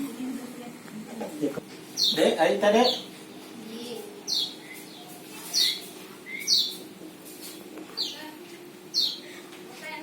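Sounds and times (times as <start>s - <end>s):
bird chirping: 2.0s - 3.4s, 4.2s - 6.9s, 7.9s - 9.3s.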